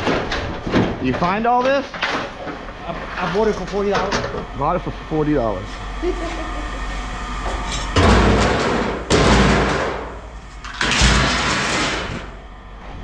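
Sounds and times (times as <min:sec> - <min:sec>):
loud crashes: 0:10.8 - 0:12.2.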